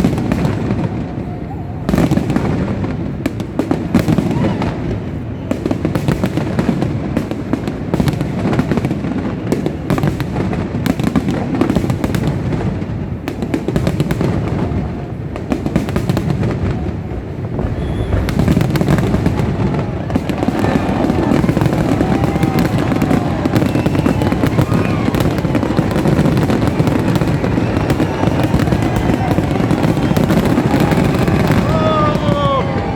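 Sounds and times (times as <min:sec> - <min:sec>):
fireworks bangs and crackles: 0:00.0 - 0:32.9
low rumble: 0:17.0 - 0:19.6.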